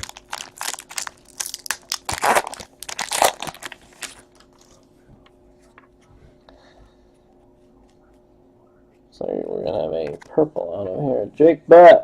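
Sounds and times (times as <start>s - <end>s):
foil wrapper crinkling: 0.0s - 4.8s.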